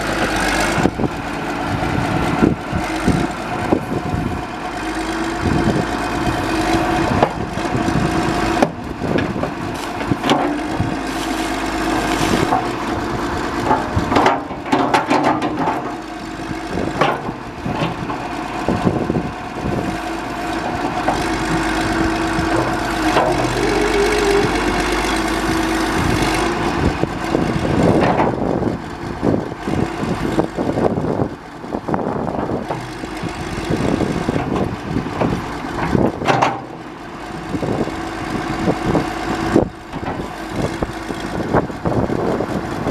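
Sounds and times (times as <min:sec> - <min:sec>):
diesel engine running: 0:00.0 - 0:42.9
metal knocks and clanks: 0:08.6 - 0:11.4, 0:13.6 - 0:16.0.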